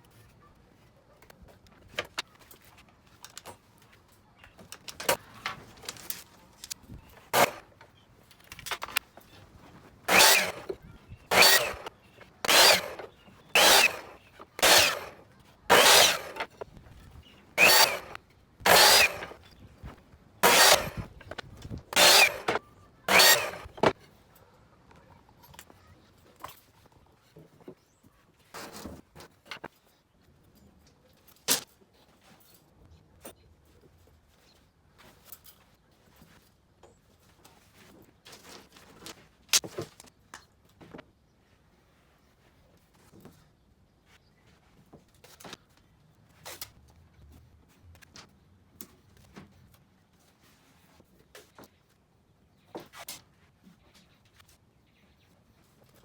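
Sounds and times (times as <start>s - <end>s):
hand tool rasping across wood: 7.4s - 7.6s, 10.1s - 10.7s, 11.3s - 16.6s, 17.6s - 19.4s, 20.4s - 21.1s, 21.9s - 23.9s.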